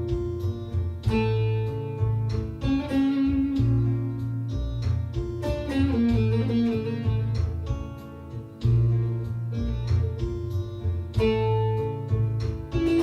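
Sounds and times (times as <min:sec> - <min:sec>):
plucked long-necked lute: 0:00.0 - 0:13.0.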